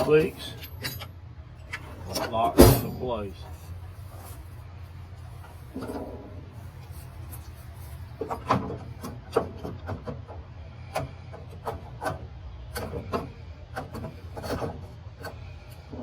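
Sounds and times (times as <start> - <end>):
steady low hum: 0.0 - 16.0
sharp clicks and knocks: 8.2 - 16.0.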